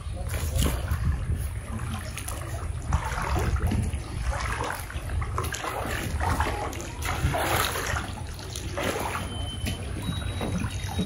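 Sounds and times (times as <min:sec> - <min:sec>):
steady low rumble: 0:00.0 - 0:08.8
river water splashing: 0:00.0 - 0:11.0.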